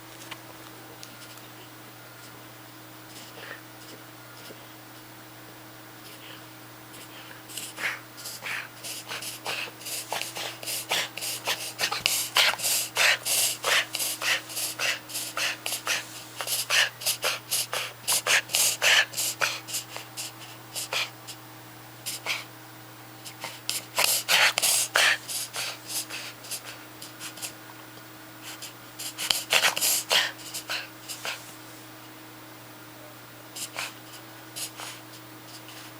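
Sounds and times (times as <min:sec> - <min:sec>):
puppy rapid noisy breaths: 0:03.1 - 0:04.7, 0:06.0 - 0:21.4, 0:22.0 - 0:22.5, 0:23.2 - 0:27.6, 0:28.4 - 0:32.1, 0:33.6 - 0:35.9.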